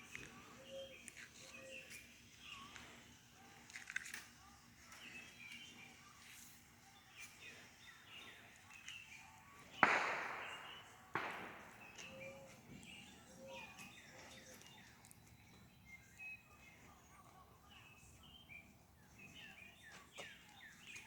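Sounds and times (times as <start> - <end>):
birds chirping: 0.0 - 21.0
firework bangs with echo: 9.7 - 12.3.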